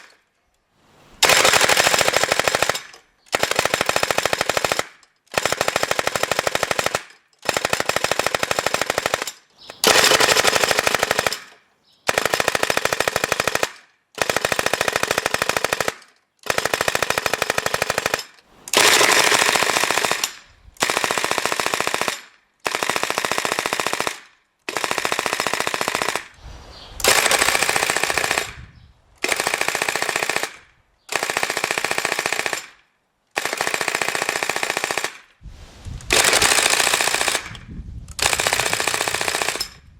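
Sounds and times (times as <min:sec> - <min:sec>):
toy gun rapid fire bursts: 0:01.2 - 0:11.4, 0:12.1 - 0:26.4, 0:27.0 - 0:28.6, 0:29.2 - 0:32.8, 0:33.4 - 0:35.3, 0:36.1 - 0:37.6, 0:38.2 - 0:39.7.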